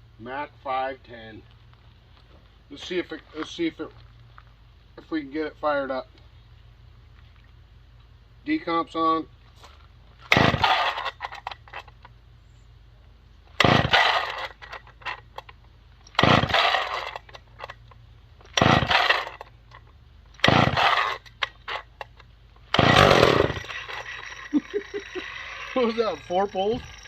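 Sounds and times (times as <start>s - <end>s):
chainsaw starter cord pulls: 10.2s - 12.1s, 13.6s - 27.0s
engine turning over rasping: 10.2s - 12.1s, 13.5s - 27.0s.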